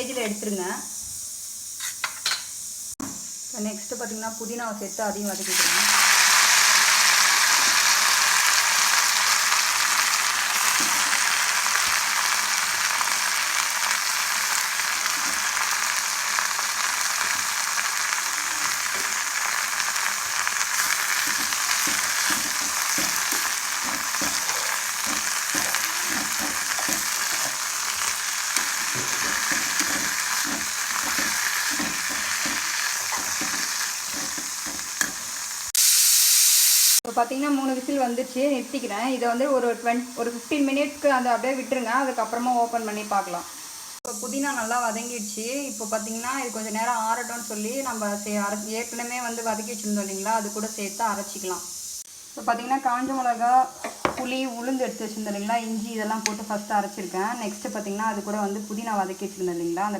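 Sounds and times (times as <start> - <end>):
leaves sizzling in hot oil: 0.0 - 59.9
stirring scraping clicks: 21.2 - 35.3.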